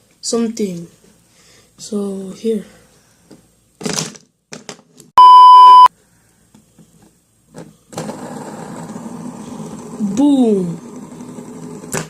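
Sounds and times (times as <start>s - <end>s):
electronic beep tone: 5.2s - 5.9s.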